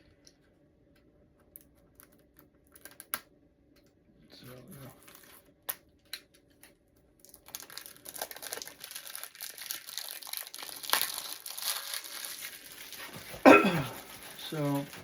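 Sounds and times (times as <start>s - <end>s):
plastic wrapping crinkling and tearing: 4.7s - 5.5s, 6.4s - 15.0s.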